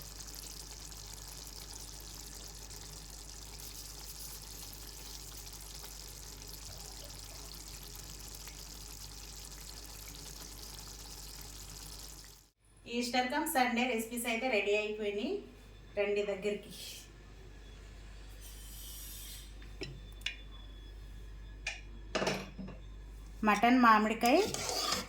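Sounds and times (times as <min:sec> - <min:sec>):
curry simmering in a pan: 0:00.0 - 0:12.5.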